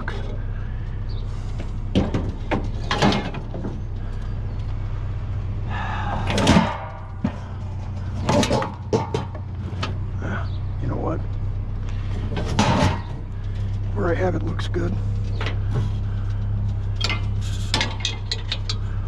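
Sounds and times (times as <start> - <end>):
steady low hum: 0.0 - 19.0
rattling scrape: 6.3 - 10.0, 12.0 - 13.7, 16.9 - 19.0.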